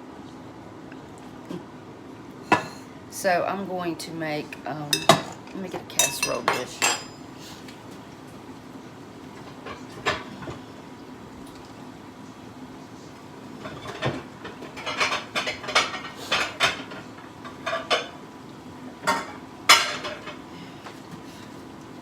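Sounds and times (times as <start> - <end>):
dishes clattering: 2.5 - 2.8, 4.9 - 7.3, 13.6 - 18.2, 19.0 - 20.4.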